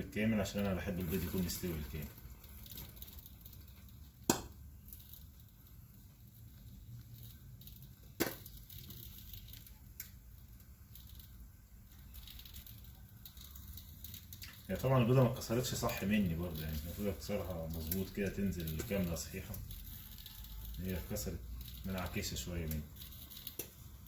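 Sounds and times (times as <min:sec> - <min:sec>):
sharp oil pops: 0:04.2 - 0:04.6, 0:08.2 - 0:08.5.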